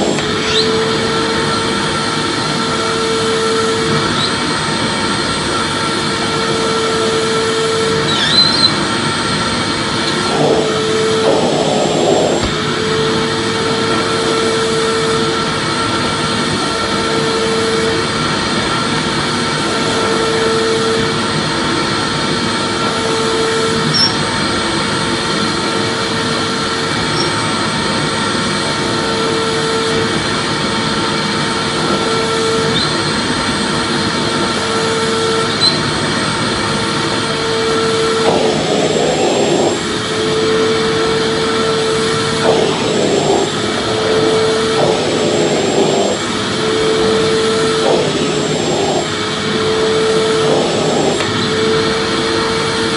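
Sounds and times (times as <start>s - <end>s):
vacuum cleaner running: 0.0s - 52.9s.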